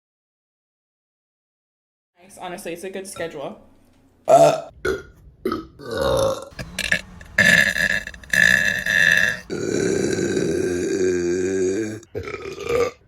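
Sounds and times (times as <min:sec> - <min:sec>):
women burping: 0:04.3 - 0:13.0.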